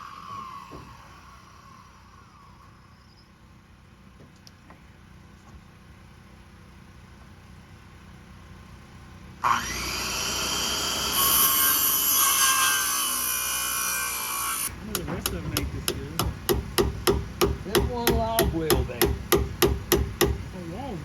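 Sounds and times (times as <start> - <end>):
power saw cutting wood: 0.0 - 2.6, 9.4 - 16.3
hammer driving nails: 14.9 - 20.4.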